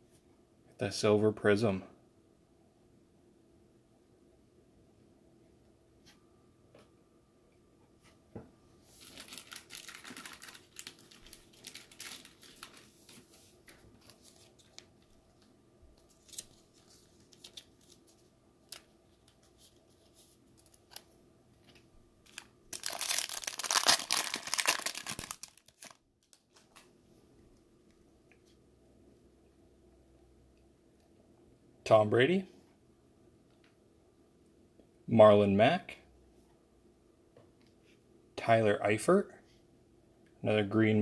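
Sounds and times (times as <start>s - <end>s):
foil wrapper crinkling and tearing: 8.9s - 15.2s, 16.0s - 21.1s, 22.2s - 26.9s.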